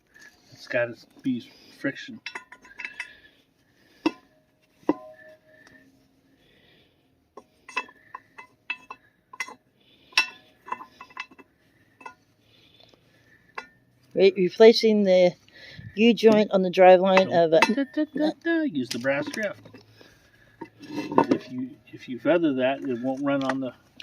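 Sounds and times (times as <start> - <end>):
metal-on-metal taps and clinks: 2.2 - 3.2, 4.0 - 5.8, 7.4 - 12.2, 13.5 - 13.8, 17.1 - 18.3.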